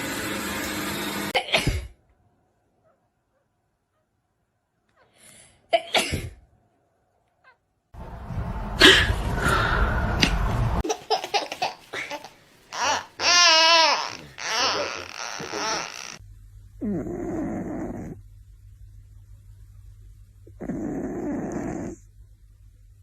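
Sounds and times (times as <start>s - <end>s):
low rumbling noise: 8.0s - 10.8s.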